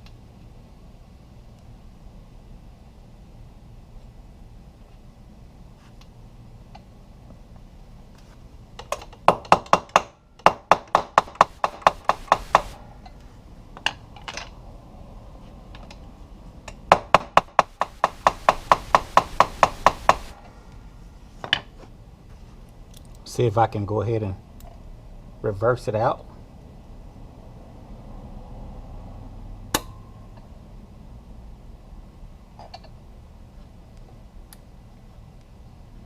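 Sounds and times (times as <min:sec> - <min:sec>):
hammer tapping on metal: 0:09.3 - 0:12.8, 0:16.9 - 0:20.4.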